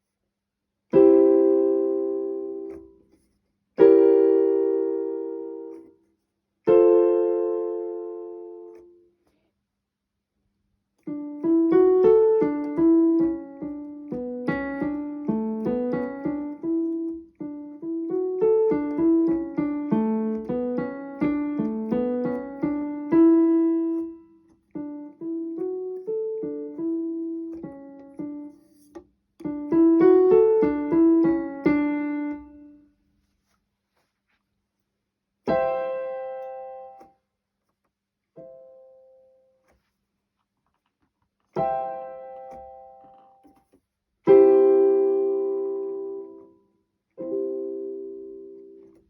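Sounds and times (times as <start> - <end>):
keyboard playing piano melody: 0.9 - 2.9, 3.8 - 5.9, 6.7 - 8.9, 11.0 - 32.8, 35.4 - 37.1, 41.5 - 43.4, 44.3 - 46.6, 47.2 - 49.0.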